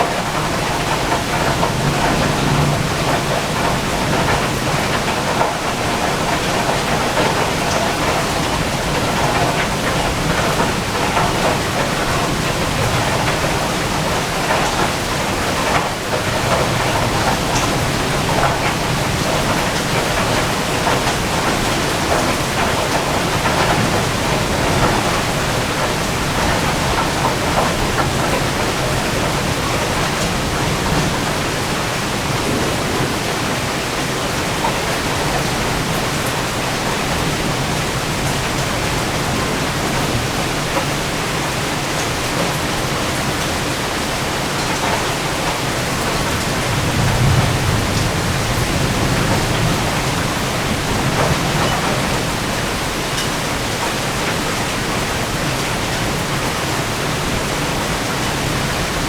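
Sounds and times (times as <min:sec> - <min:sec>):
low rumble of thunder: 0:00.0 - 0:40.6, 0:45.9 - 0:53.0
rain pouring: 0:00.0 - 0:59.0.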